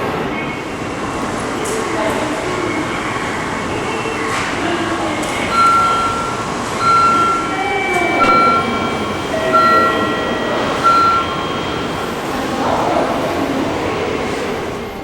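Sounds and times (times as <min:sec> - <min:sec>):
train running: 0:00.0 - 0:15.0
single-pitch electronic beep: 0:05.5 - 0:11.8.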